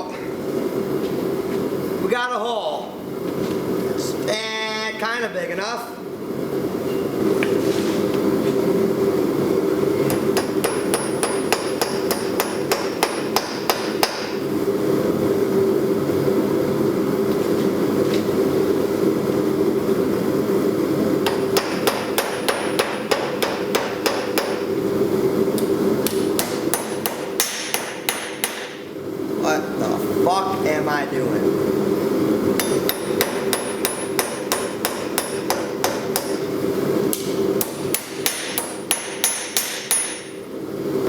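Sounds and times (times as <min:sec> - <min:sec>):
steady hum: 0:00.0 - 0:41.0
hammer striking steel on anvil: 0:10.1 - 0:14.4, 0:21.2 - 0:24.7, 0:26.0 - 0:28.9, 0:32.6 - 0:36.5, 0:37.1 - 0:40.4.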